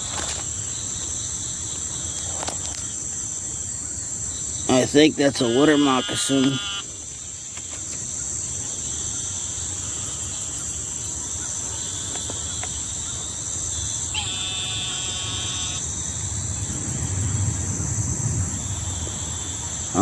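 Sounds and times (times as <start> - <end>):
insects chorus: 0.0 - 20.0
pitched call with overtones: 5.2 - 6.8, 14.1 - 15.8.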